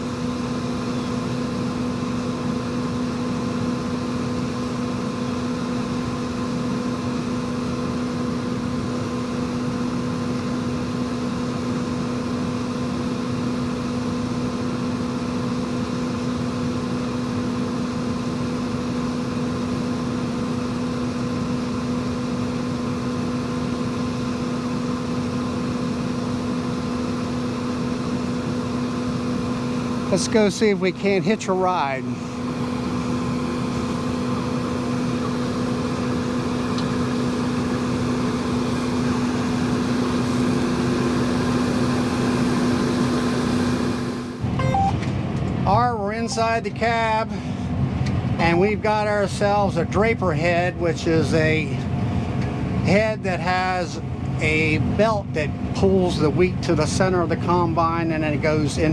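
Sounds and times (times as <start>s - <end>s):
combine harvester running: 0.0s - 58.9s.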